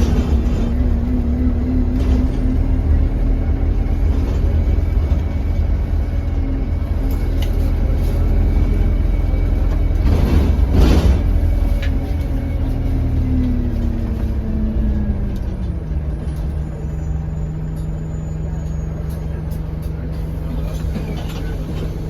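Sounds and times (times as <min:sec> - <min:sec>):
bus engine drone: 0:00.0 - 0:22.0.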